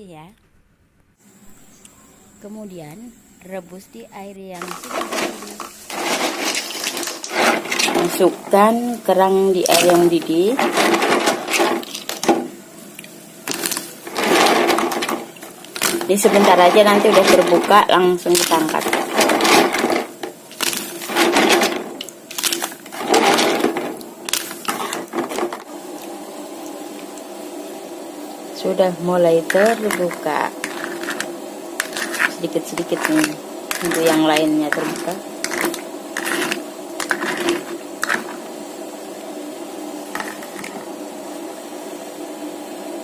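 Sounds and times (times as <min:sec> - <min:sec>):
water boiling in a pot: 0:04.6 - 0:43.0
clam shells clattering: 0:29.5 - 0:38.4.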